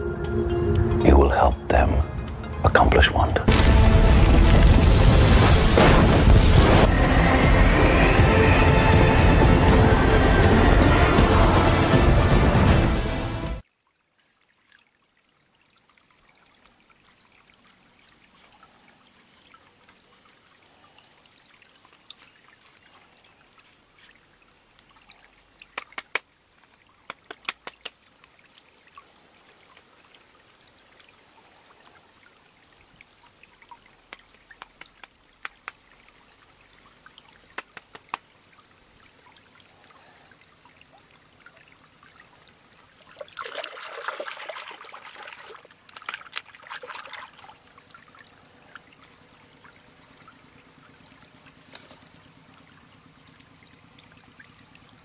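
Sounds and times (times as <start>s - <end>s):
sharp plastic clicks: 27.1s - 28.0s, 37.5s - 38.3s.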